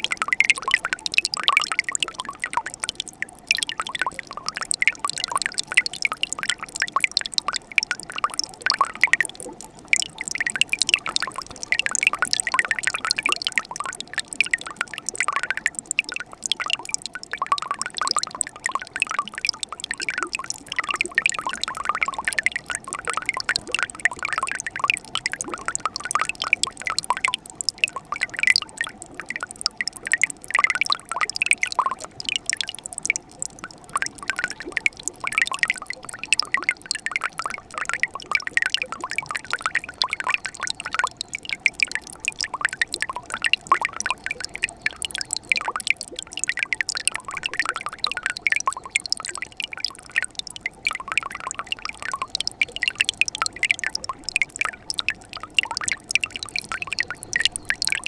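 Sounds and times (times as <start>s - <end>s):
stream babbling: 49.9s - 58.0s.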